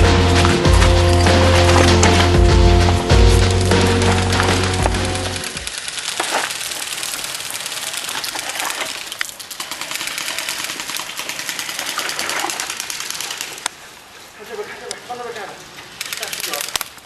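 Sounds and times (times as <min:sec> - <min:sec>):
airsoft guns firing full auto: 0:09.6 - 0:13.6.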